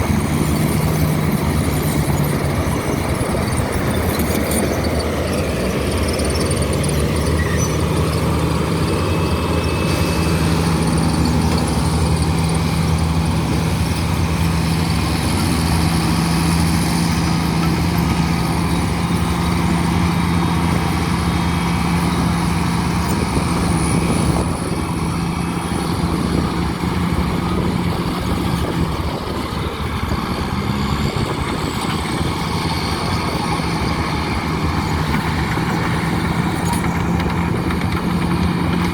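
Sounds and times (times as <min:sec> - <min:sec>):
diesel engine droning: 0:00.0 - 0:38.9.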